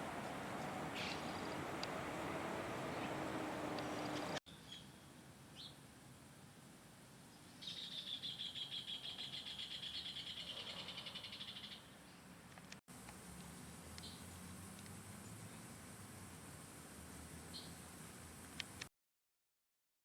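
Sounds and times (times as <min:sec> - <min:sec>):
songbird trilling: 0:00.9 - 0:01.6
faint bird chirps: 0:07.3 - 0:12.3.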